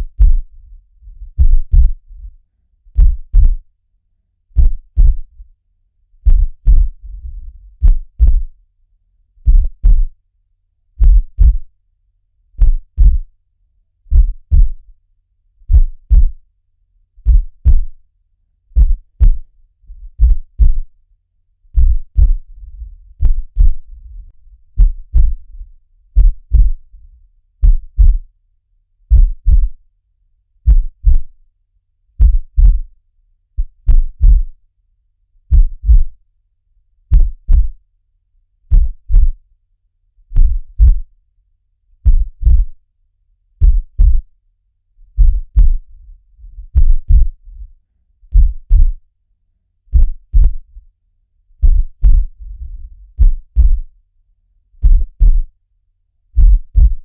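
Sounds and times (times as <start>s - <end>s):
heartbeat double thump: 0.0s - 0.5s, 1.2s - 2.0s, 3.0s - 3.6s, 4.6s - 5.3s, 6.2s - 7.0s, 7.8s - 8.5s, 9.4s - 10.1s, 11.0s - 11.7s, 12.6s - 13.3s, 14.1s - 14.8s, 15.7s - 16.4s, 17.2s - 17.9s, 18.8s - 19.5s, 20.2s - 20.9s, 21.8s - 25.6s, 26.2s - 26.8s, 27.6s - 28.3s, 29.1s - 29.8s, 30.7s - 31.3s, 32.2s - 32.9s, 33.6s - 34.5s, 35.5s - 36.2s, 37.1s - 37.8s, 38.7s - 39.4s, 40.4s - 41.1s, 42.0s - 42.8s, 43.6s - 44.3s, 45.2s - 45.8s, 46.5s - 47.4s, 48.3s - 49.0s, 49.9s - 50.7s, 51.6s - 53.9s, 54.8s - 55.5s, 56.4s - 57.0s.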